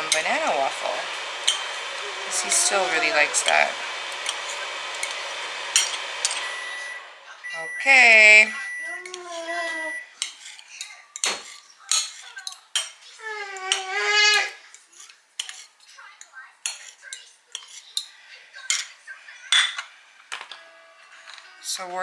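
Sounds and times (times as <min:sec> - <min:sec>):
utensils clinking against plates: 0:00.0 - 0:07.0, 0:08.2 - 0:22.0.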